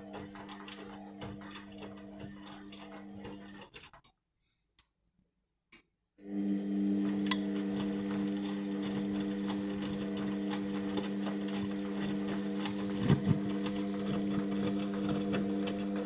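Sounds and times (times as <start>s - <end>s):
washing machine humming: 6.4s - 16.0s.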